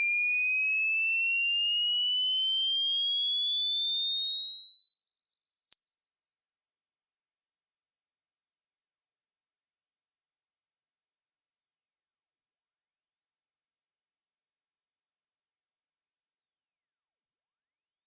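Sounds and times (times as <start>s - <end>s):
sine tone rising in pitch: 0.0s - 18.0s.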